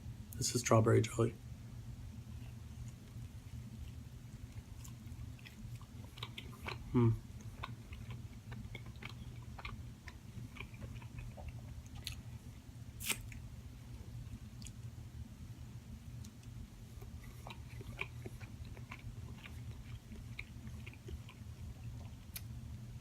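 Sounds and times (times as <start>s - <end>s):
low steady hum: 0.0s - 23.0s
chewing and mouth sounds: 2.3s - 13.4s, 14.1s - 14.9s, 16.2s - 22.6s
short vocal sound: 6.9s - 7.2s.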